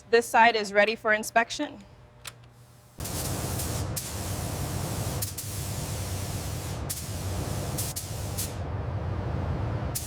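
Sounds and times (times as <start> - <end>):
continuous hiss: 2.2 - 8.6.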